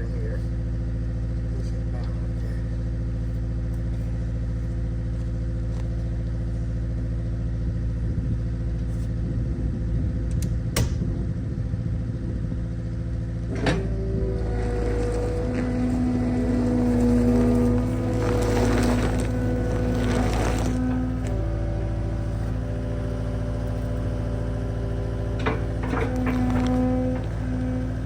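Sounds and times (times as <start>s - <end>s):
engine idling: 0.0s - 28.0s
knocks and clatter: 13.5s - 28.0s.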